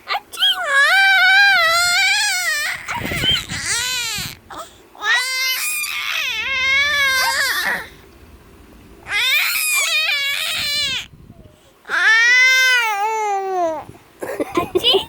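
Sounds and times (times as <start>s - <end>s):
baby crying: 0.1s - 8.0s, 9.1s - 11.1s, 11.9s - 13.9s.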